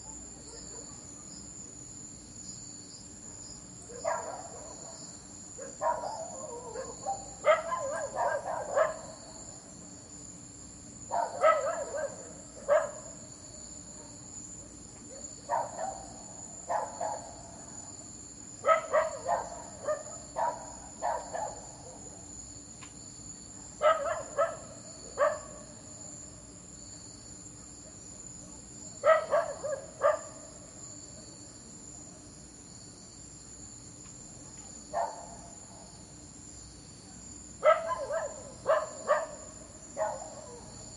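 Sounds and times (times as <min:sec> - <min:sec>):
dog barking: 0:00.0 - 0:01.0, 0:03.3 - 0:05.0, 0:05.6 - 0:09.2, 0:11.1 - 0:13.2, 0:15.1 - 0:17.4, 0:18.6 - 0:22.1, 0:23.8 - 0:25.7, 0:29.0 - 0:30.5, 0:34.9 - 0:35.4, 0:37.6 - 0:40.7
crickets chirping: 0:00.0 - 0:40.9.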